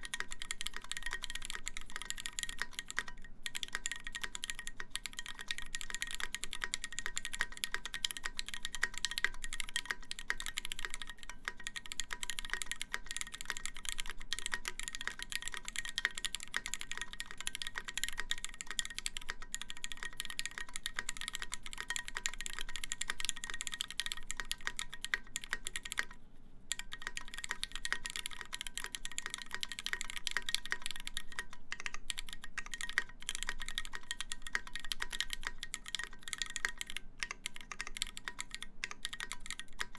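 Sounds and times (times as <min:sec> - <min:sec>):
typing on mechanical keyboard: 0:00.0 - 0:26.1, 0:26.7 - 0:39.9.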